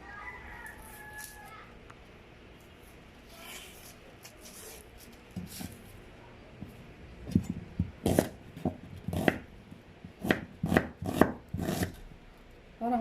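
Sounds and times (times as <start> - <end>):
knife chopping on cutting board: 7.3 - 9.5, 10.1 - 12.0.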